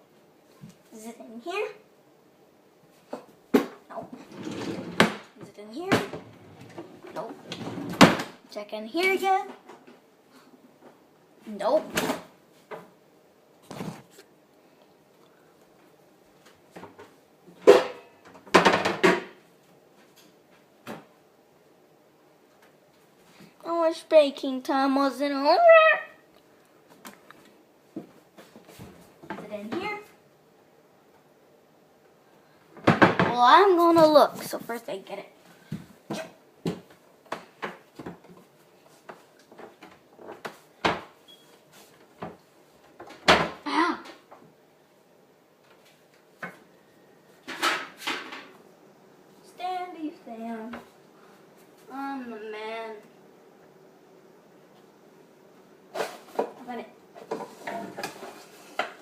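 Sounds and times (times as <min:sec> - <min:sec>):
cupboard doors and drawers shutting: 0:03.6 - 0:08.4.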